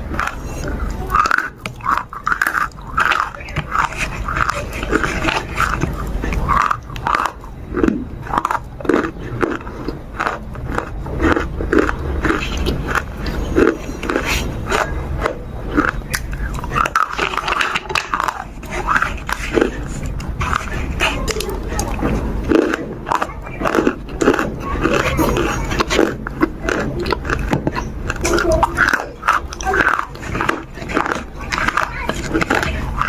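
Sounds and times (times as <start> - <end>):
animal chewing sticky food: 0.0 - 33.0.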